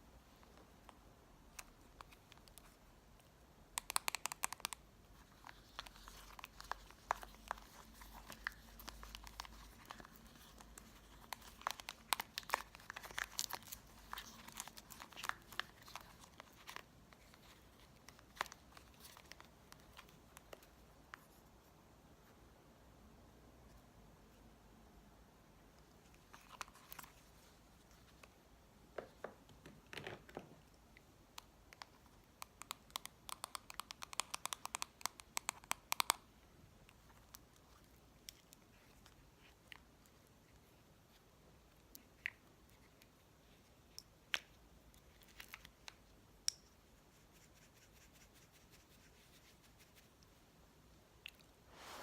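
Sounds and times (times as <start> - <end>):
wrapping crinkling and crackling: 5.2 - 20.6.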